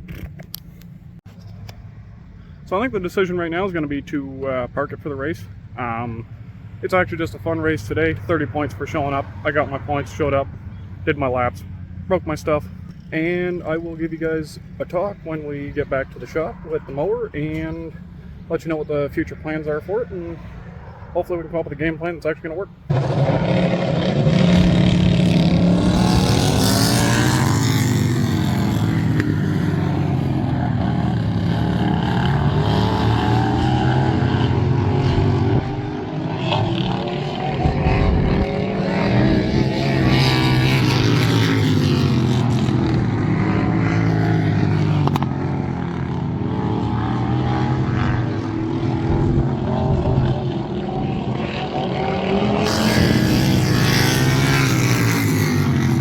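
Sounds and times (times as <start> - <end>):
lawn tractor engines revving: 22.9 - 56.0.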